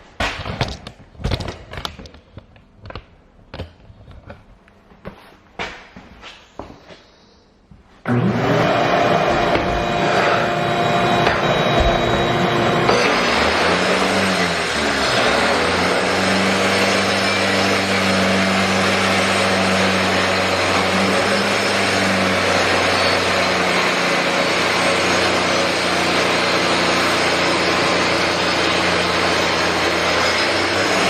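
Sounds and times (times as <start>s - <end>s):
shop vacuum running: 8.0s - 31.0s
angle grinder grinding concrete: 8.1s - 31.0s.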